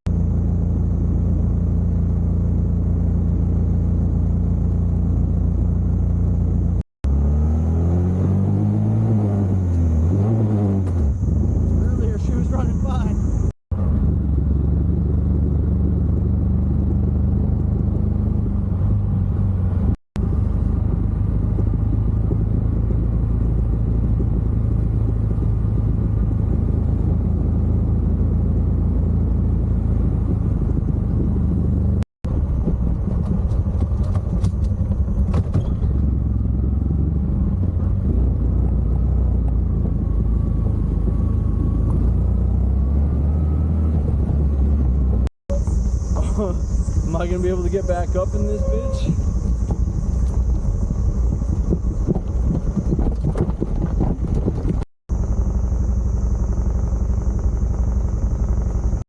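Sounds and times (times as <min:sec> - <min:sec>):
road and wind noise: 0:00.0 - 0:59.0
moped engine running: 0:45.1 - 0:59.0.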